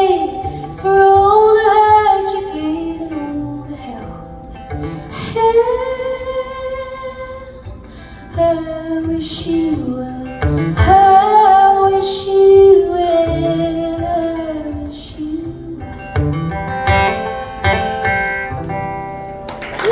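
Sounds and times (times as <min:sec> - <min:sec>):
strummed acoustic guitar: 0:00.0 - 0:19.8
woman singing long notes: 0:08.4 - 0:16.2.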